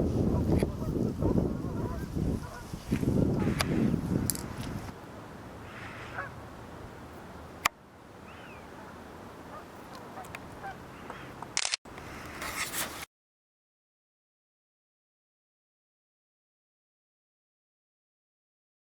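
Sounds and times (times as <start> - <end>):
wind rushing: 0.0 - 5.0
geese honking faintly: 0.2 - 2.8, 5.5 - 11.4
ducks: 0.3 - 2.8, 5.6 - 6.4, 8.3 - 11.4
sharp click: 11.5 - 11.8.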